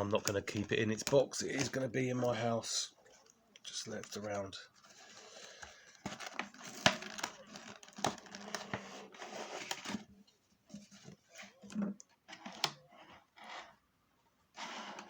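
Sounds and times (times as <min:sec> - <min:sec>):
packaging rustling and crinkling: 0:04.0 - 0:11.7.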